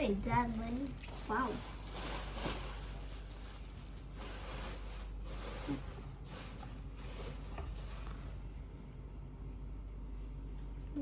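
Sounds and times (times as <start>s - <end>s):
packaging rubbing and scraping: 0.4s - 8.4s.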